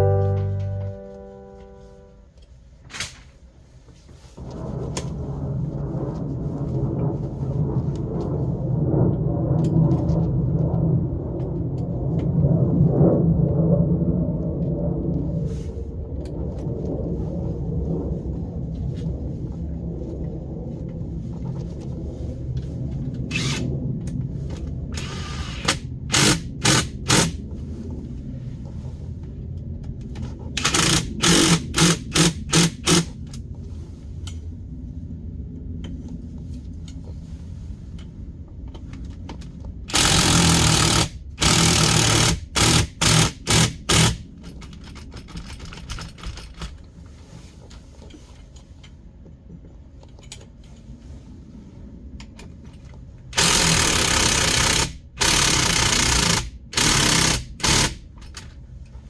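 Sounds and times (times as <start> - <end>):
steady low hum: 0.0 - 59.0
small electric motor pulsing: 23.3 - 23.7, 25.0 - 27.4, 30.6 - 33.1, 39.9 - 44.2, 53.4 - 58.0.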